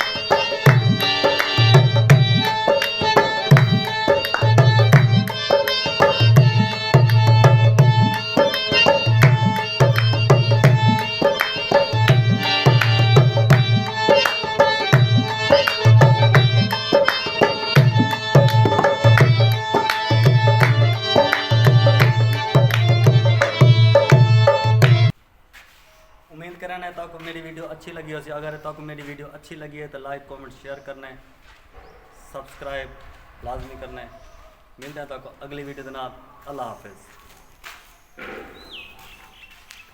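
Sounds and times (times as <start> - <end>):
drum rhythm: 0.0 - 25.1
sustained melodic tones: 0.0 - 25.1.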